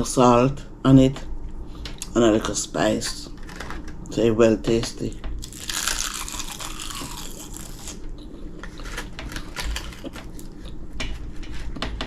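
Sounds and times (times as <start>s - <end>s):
person chewing crunchy snack: 5.4s - 10.8s.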